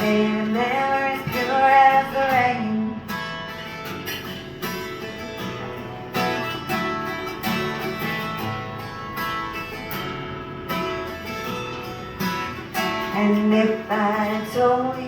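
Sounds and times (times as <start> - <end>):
person singing: 0.0 - 3.1, 13.1 - 15.0
acoustic guitar strumming: 0.0 - 15.0.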